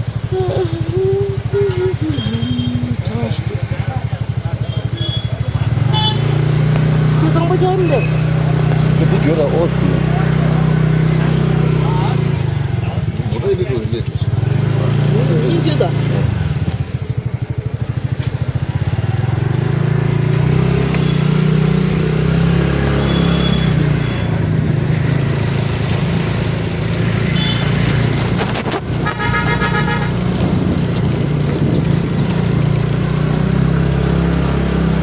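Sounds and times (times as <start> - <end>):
road noise: 0.0 - 35.0
vehicle engine rumble: 0.0 - 35.0
vehicle horn honking: 4.6 - 6.6, 22.9 - 24.4, 26.4 - 27.8, 28.9 - 30.7.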